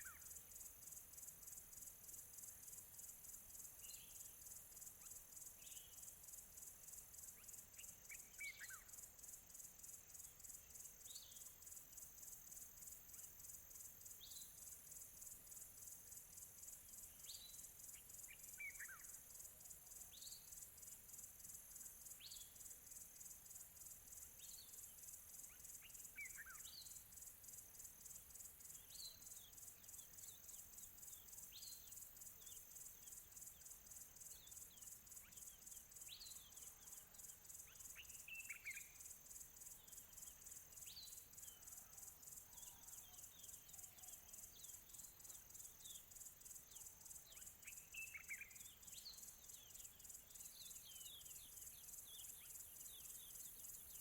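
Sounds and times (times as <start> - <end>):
small birds chirping: 0.0 - 0.4, 23.8 - 27.0, 27.8 - 54.0
insects trilling: 0.0 - 54.0.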